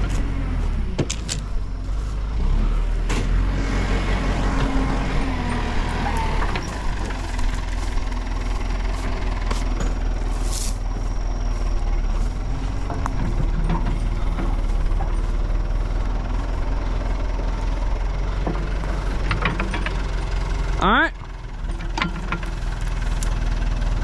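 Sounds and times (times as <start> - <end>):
diesel engine running: 0.0 - 24.0
faint metal clanks: 1.0 - 1.6.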